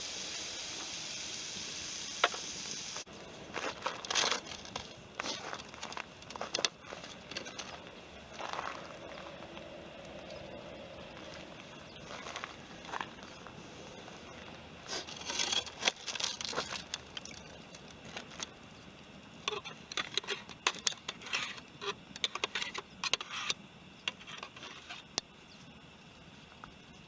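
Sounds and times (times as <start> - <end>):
small objects clinking and scraping: 3.5 - 8.8, 14.8 - 18.5, 19.5 - 25.1.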